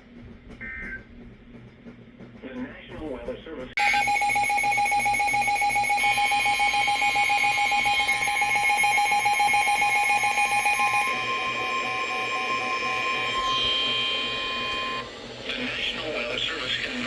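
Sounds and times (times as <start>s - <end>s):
fluttering electronic alert tones: 3.8s - 15.0s.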